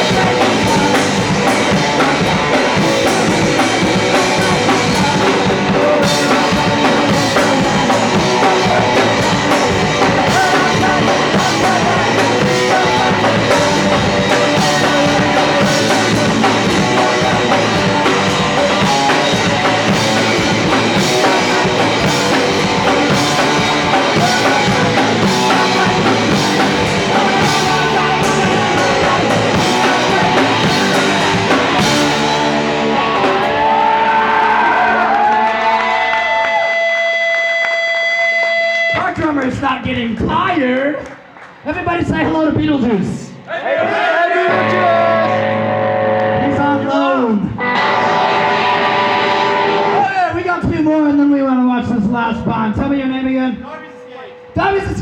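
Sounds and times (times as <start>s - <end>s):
drum kit: 0.0s - 36.1s
vocals: 0.0s - 36.9s, 38.8s - 55.0s
distorted guitar: 0.0s - 39.1s, 44.5s - 50.5s, 53.5s - 55.0s
bass: 0.0s - 43.5s, 44.4s - 55.0s.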